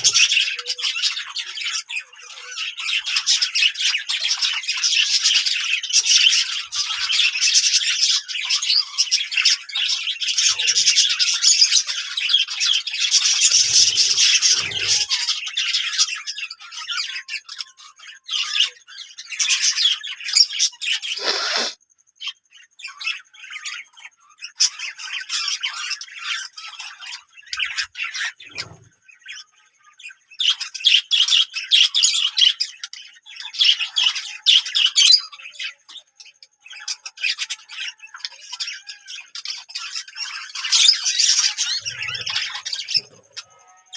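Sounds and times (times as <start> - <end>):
parrots chattering and chirping: 0.0 - 43.9
harsh parrot burst: 21.1 - 21.8.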